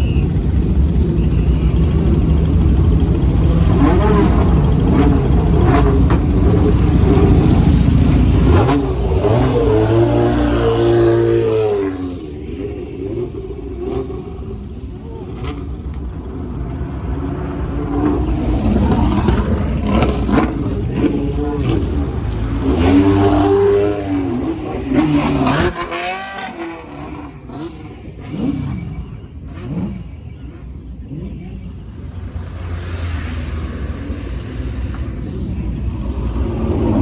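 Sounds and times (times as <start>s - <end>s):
racing car engines revving: 0.0s - 37.0s
racing cars passing by: 0.0s - 37.0s.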